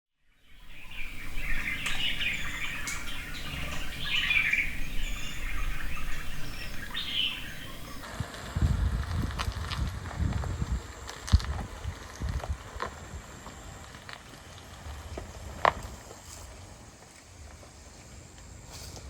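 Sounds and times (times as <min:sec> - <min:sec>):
outdoor background noise: 0:00.2 - 0:19.0
birds chirping: 0:00.3 - 0:08.0.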